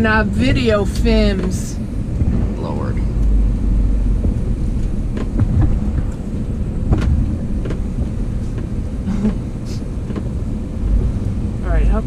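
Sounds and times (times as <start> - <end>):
knocks and rattles: 5.1 - 9.4.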